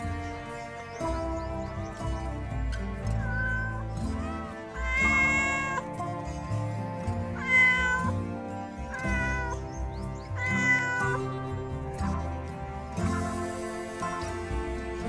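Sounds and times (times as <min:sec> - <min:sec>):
background music: 0:00.0 - 0:15.0
kitten meowing: 0:03.0 - 0:06.0, 0:07.2 - 0:11.3.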